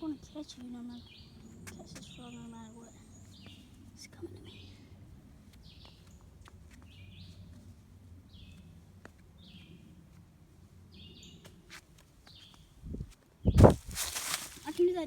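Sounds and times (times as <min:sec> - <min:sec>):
bird chirping: 0:00.0 - 0:07.6, 0:09.4 - 0:09.9, 0:10.9 - 0:11.6.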